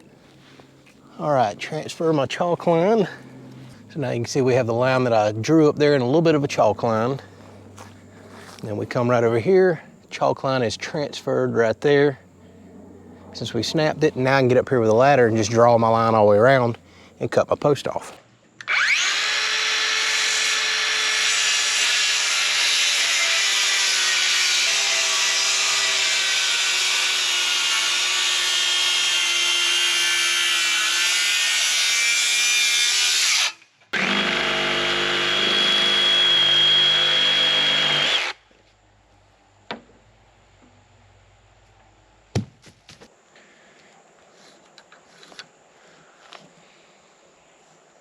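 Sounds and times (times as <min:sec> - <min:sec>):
electric saw cutting wood: 0:18.6 - 0:38.4.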